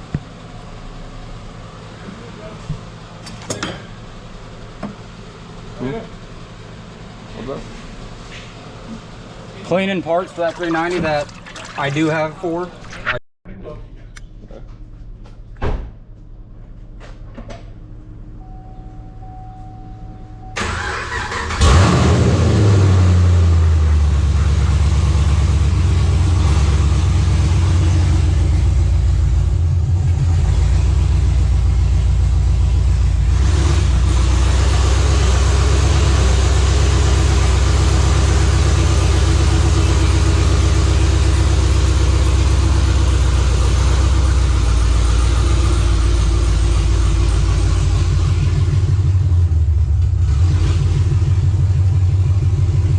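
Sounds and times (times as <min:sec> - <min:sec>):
car engine starting and idling: 0:00.0 - 0:12.9, 0:17.0 - 0:52.9.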